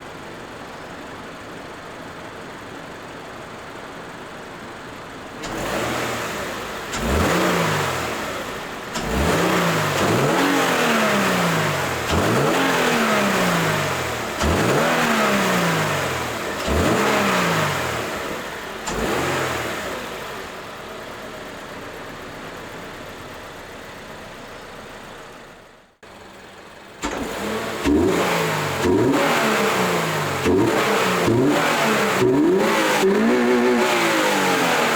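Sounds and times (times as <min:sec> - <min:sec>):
car engine idling and revving: 0:00.0 - 0:34.9
engine intake noise: 0:03.8 - 0:21.7, 0:26.1 - 0:34.9.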